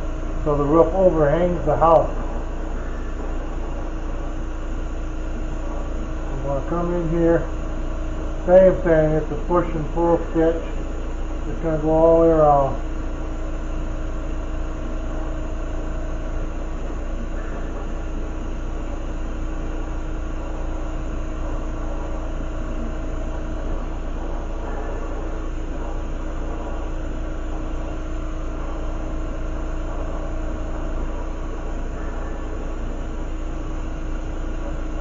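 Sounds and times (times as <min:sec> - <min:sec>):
low hum: 0:00.0 - 0:35.0.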